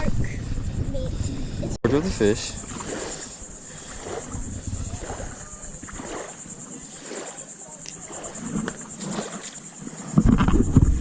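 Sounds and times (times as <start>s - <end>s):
insects trilling: 0.0s - 11.0s
faint voices: 3.9s - 6.0s.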